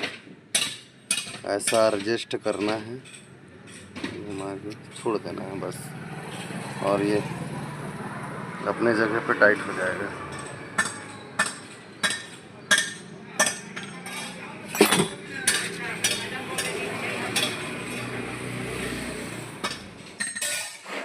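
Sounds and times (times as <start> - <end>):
metal tools clinking on engine: 0.6 - 5.3, 9.8 - 18.2, 19.6 - 20.8.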